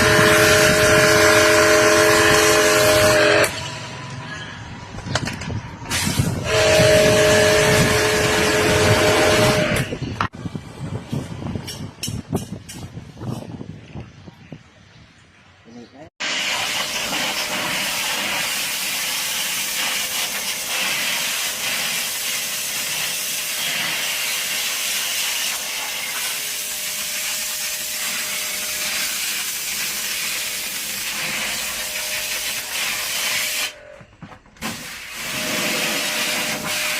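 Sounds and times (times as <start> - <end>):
water jet spraying: 16.2 - 33.8, 34.6 - 36.9.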